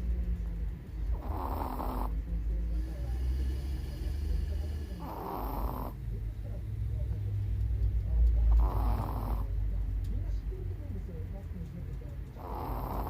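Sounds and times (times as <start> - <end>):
low steady rumble: 0.0 - 13.0
dog snoring: 1.1 - 6.1, 8.4 - 9.6, 12.4 - 13.0.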